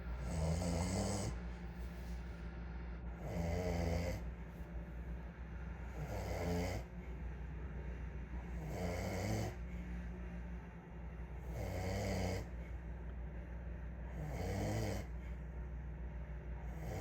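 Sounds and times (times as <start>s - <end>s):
man snoring: 0.2s - 1.4s, 3.2s - 4.2s, 5.9s - 6.9s, 8.6s - 9.6s, 11.4s - 12.6s, 14.1s - 15.2s, 16.7s - 17.0s.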